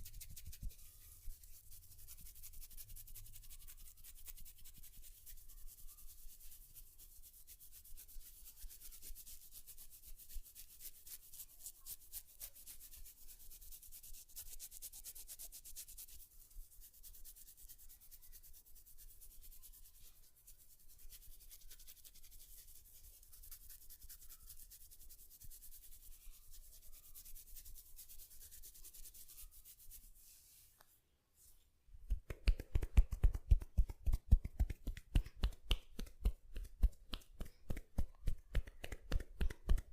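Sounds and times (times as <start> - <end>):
scratching and rubbing hair: 0.0 - 39.9
percussive massage tapping: 32.1 - 39.9.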